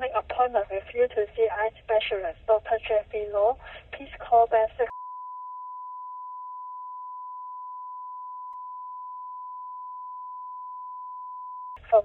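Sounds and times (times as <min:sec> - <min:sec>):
censor bleep tone: 0:04.9 - 0:11.8.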